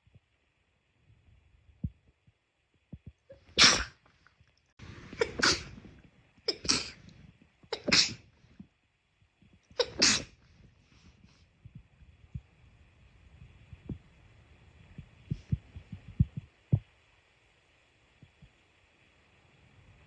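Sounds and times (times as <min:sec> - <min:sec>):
sharp sneezes: 0:03.3 - 0:04.0, 0:05.1 - 0:05.8, 0:06.5 - 0:07.0, 0:07.7 - 0:08.2, 0:09.8 - 0:10.4.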